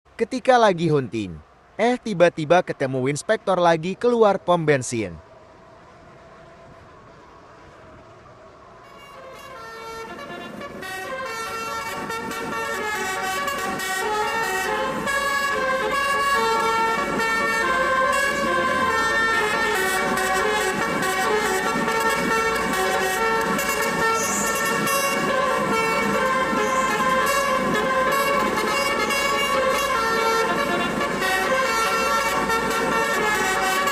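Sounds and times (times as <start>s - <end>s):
multi-tone air horn: 8.8s - 33.9s.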